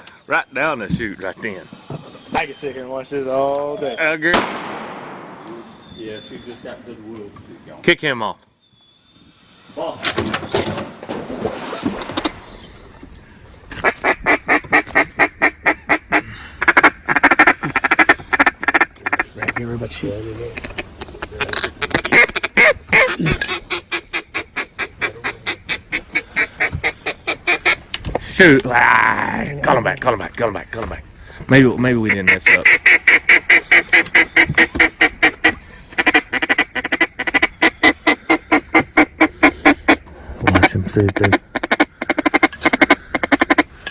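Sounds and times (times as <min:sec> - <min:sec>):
duck call quacking: 0:13.8 - 0:19.6, 0:21.4 - 0:27.8, 0:32.0 - 0:43.7.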